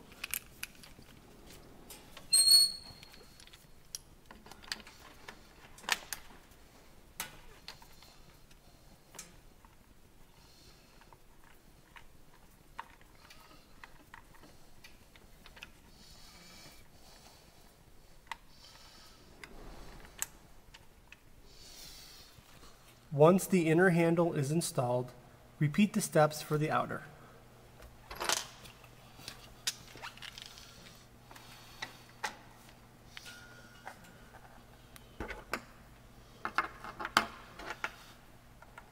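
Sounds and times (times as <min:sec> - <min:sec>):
faint steady hum: 0:00.0 - 0:38.9
metal parts clicking and knocking: 0:00.1 - 0:01.1.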